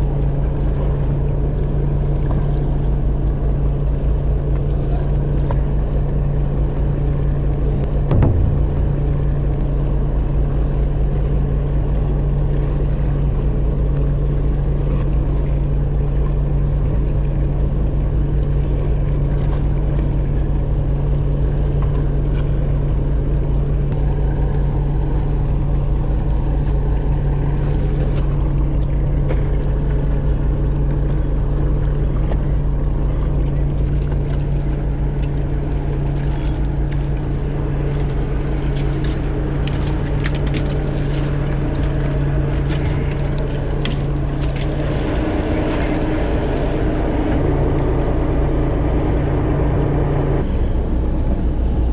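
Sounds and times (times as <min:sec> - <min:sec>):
boat engine droning: 0:37.2 - 0:51.9.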